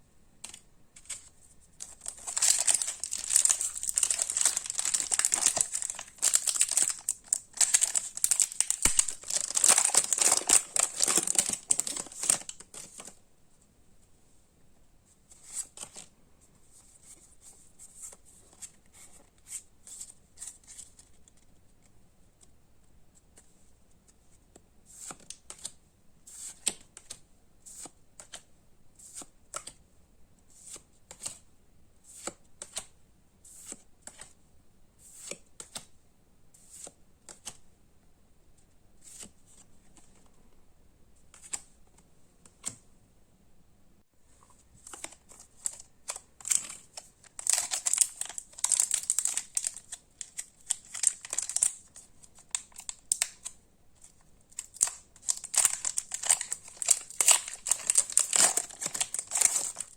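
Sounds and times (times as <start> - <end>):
cards rustling: 0.4 - 13.2, 44.5 - 53.4, 54.6 - 59.9
foil wrapper crinkling and tearing: 1.8 - 12.6, 45.6 - 51.8, 54.6 - 59.9.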